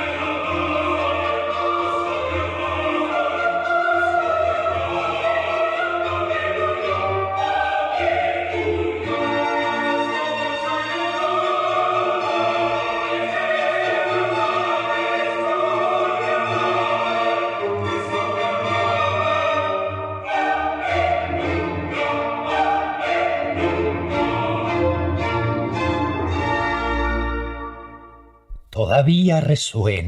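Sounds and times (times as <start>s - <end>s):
choir singing: 0.0s - 28.0s
orchestral accompaniment: 0.0s - 28.3s.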